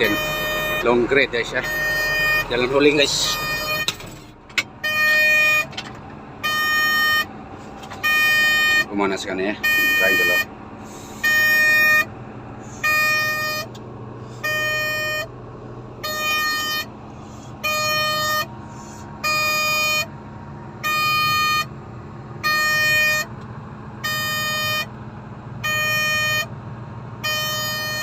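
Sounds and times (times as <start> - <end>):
warning beeper short beeps: 0.0 - 4.0, 6.4 - 7.3, 9.6 - 10.5, 11.2 - 12.1, 12.8 - 13.7, 14.4 - 15.3, 16.0 - 16.9, 17.6 - 18.5, 19.2 - 20.1, 20.8 - 21.7, 22.4 - 23.3, 24.0 - 24.9, 25.6 - 26.5
diesel engine idling: 0.0 - 28.0.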